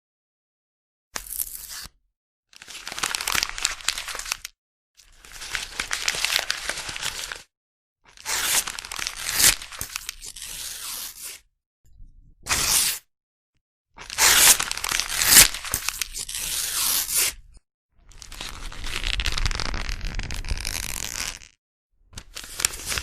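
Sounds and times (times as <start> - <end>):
paper tearing and crumpling: 2.7 - 4.5, 5.2 - 7.5, 8.1 - 11.4, 12.5 - 13.0, 14.0 - 17.4, 18.2 - 21.6, 22.2 - 23.0.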